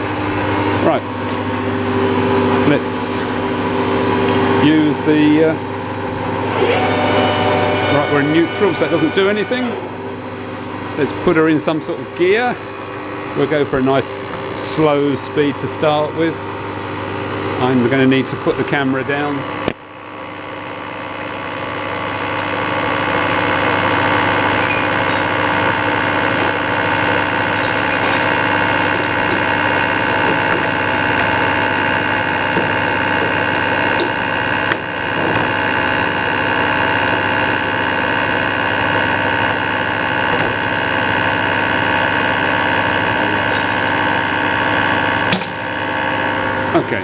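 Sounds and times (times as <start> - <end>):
metal lathe humming: 0.0 - 18.1.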